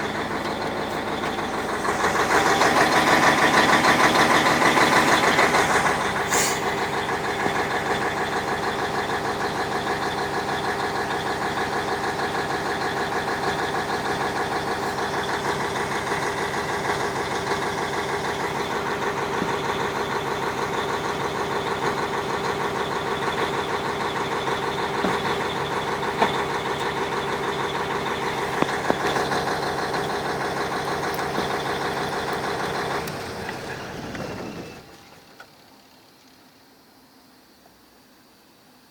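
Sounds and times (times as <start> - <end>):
diesel engine idling with knock: 0.0 - 35.9.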